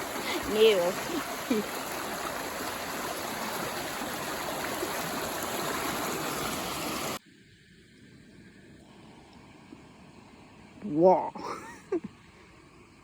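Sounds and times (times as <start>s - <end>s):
stream running over rocks: 0.0s - 7.2s.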